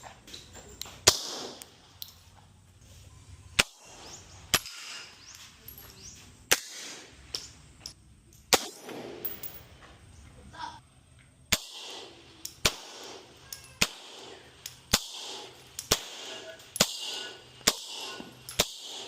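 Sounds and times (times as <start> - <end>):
gunshots: 1.0 - 1.6, 8.5 - 9.5, 11.5 - 19.0.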